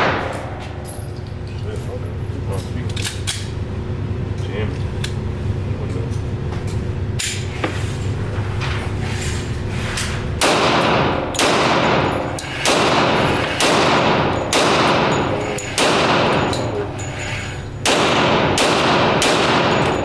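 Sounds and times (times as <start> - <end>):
pistol shots echoing indoors: 0.0 - 0.8, 10.4 - 16.8, 17.8 - 20.0.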